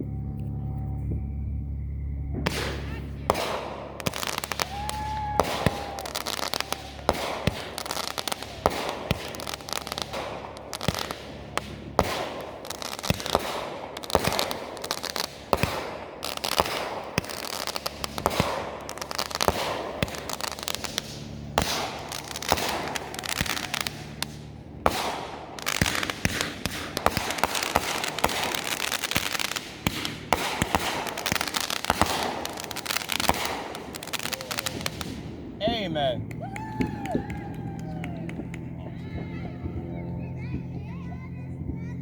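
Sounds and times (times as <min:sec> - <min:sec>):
fireworks bangs: 0:00.0 - 0:42.0
fireworks crackling: 0:02.4 - 0:42.0.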